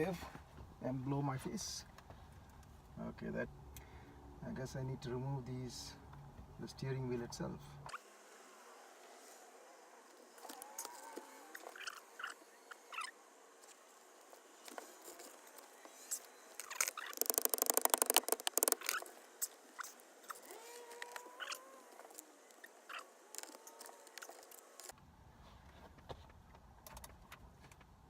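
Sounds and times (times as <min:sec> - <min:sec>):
socket ratchet clicking: 0:16.7 - 0:19.0.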